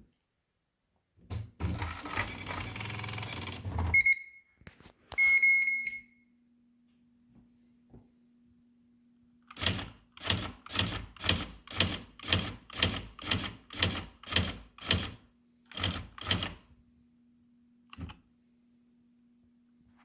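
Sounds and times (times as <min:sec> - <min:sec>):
electric typewriter strokes: 0:01.7 - 0:03.8, 0:09.5 - 0:16.6
typewriter click: 0:09.5 - 0:16.6.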